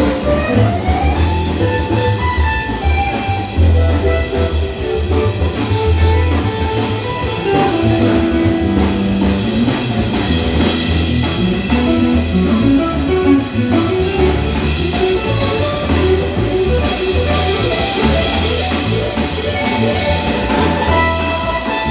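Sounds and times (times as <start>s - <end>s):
drums: 0.0s - 21.9s
guitar melody: 0.0s - 21.9s
low bass notes: 0.0s - 21.9s.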